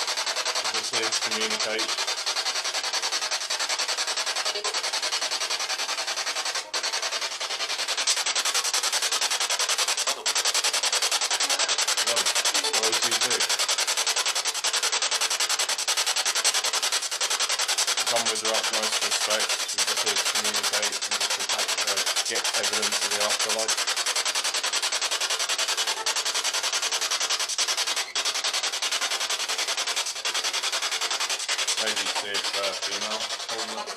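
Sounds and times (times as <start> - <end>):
radio static rapidly chopped: 0.0 - 33.9.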